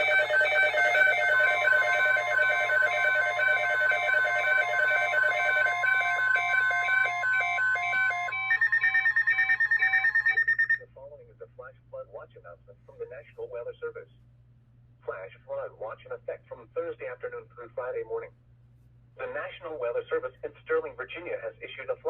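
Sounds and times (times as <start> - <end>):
multi-tone electronic beeping: 0.0 - 10.8.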